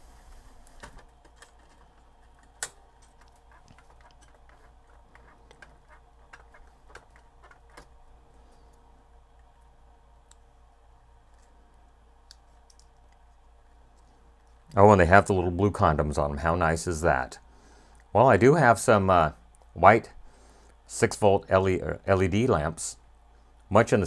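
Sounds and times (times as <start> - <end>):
low steady hum: 0.0 - 24.0
small clicks and scrapes: 0.2 - 10.5, 11.2 - 14.7.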